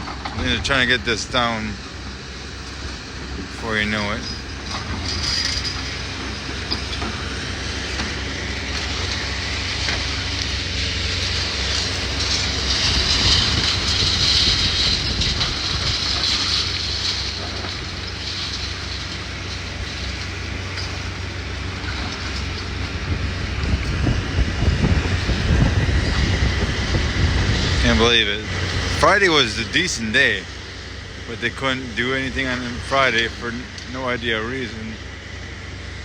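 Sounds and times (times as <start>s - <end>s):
excavator diesel engine rumble: 0.0s - 36.0s
falling debris clattering: 3.7s - 30.4s.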